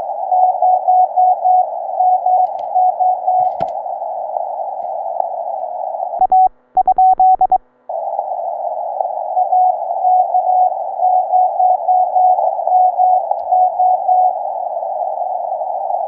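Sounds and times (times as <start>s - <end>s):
keyed morse sidetone with clicks: 6.2s - 7.6s
morse code tones: 6.2s - 7.6s.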